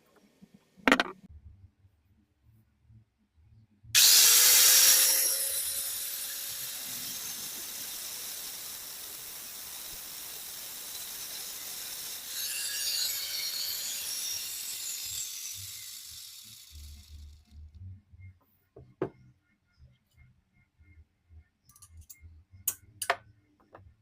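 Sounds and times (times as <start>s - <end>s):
angle grinder running: 4.0s - 17.4s.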